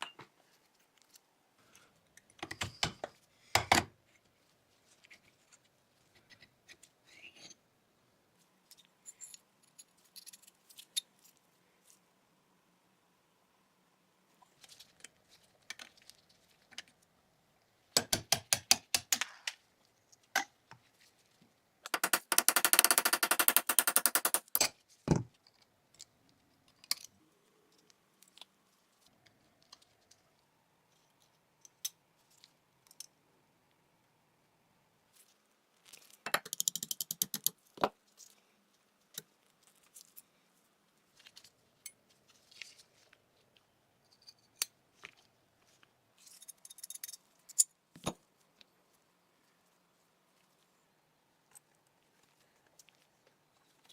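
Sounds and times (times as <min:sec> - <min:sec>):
metal parts clicking and rattling: 0:08.7 - 0:11.3.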